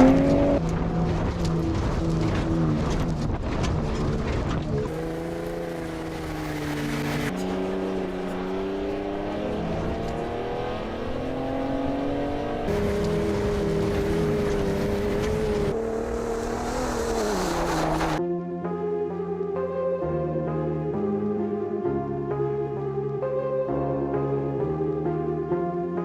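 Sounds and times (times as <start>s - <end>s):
truck engine accelerating: 0.0s - 18.2s.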